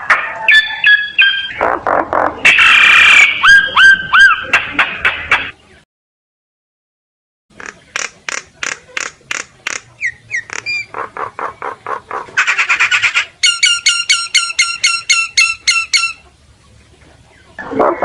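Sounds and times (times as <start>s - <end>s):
myna bird calling: 7.5s - 16.3s.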